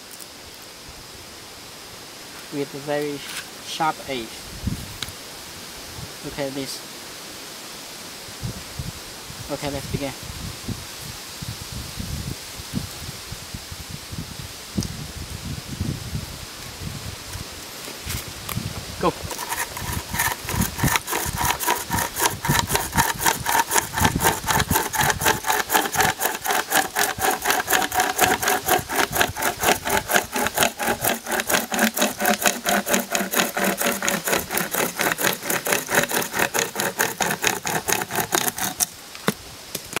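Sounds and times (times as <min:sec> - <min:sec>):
hand chain saw rasping wood: 0:19.0 - 0:39.0.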